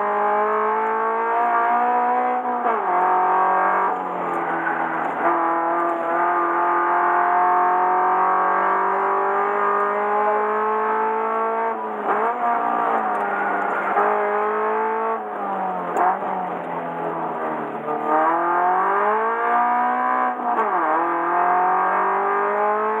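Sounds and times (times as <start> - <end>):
car engine at full throttle: 0.0 - 23.0.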